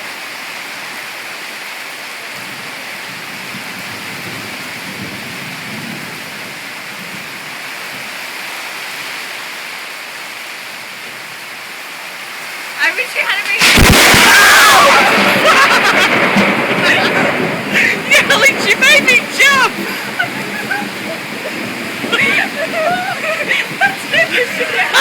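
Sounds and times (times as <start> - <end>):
heavy rain pouring: 0.0 - 25.0
low rumble of thunder: 2.4 - 7.6, 13.6 - 25.0.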